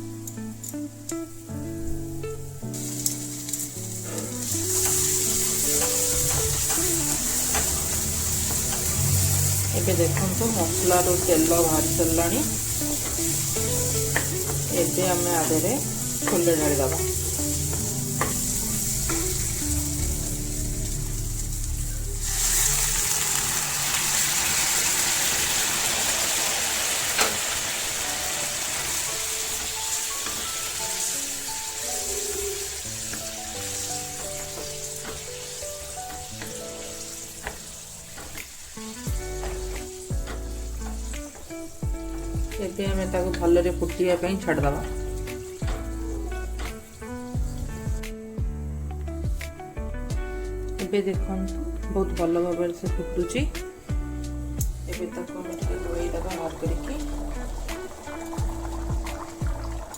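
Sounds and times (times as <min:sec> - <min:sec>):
faint background music: 0:00.0 - 0:59.9
spices sizzling in hot oil: 0:00.0 - 0:59.9
utensil knocking on pan: 0:09.7 - 0:19.4.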